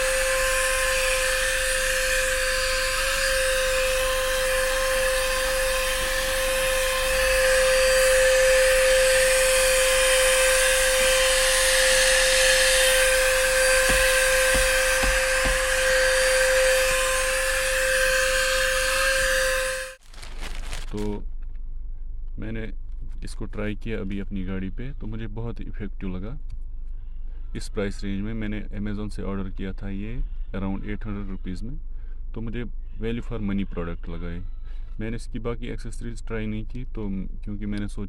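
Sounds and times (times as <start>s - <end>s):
handheld vacuum cleaner running: 0.0s - 20.9s.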